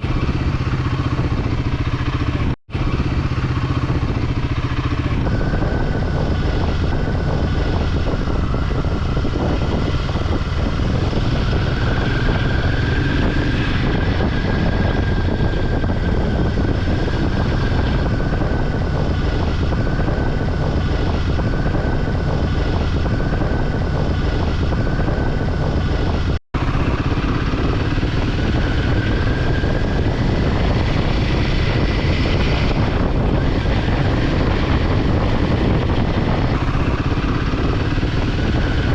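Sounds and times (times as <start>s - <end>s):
motorcycle engine and road noise: 0.0s - 38.9s.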